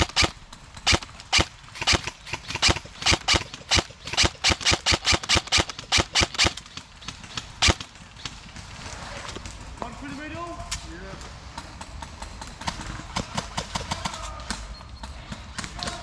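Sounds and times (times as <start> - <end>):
airsoft guns firing: 0.0 - 16.0.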